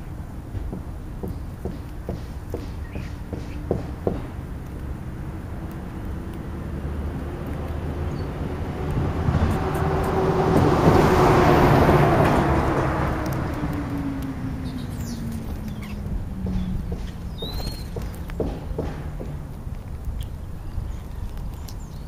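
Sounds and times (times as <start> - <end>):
vehicle passing by: 4.7 - 19.5
sharp taps: 16.4 - 19.5.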